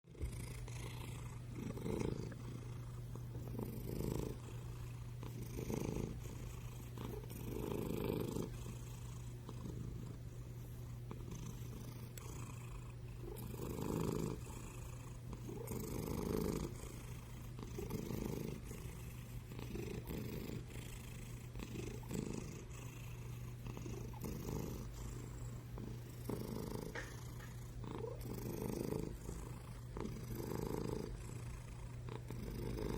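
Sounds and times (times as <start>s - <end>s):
cat purring loudly: 0.0s - 32.9s.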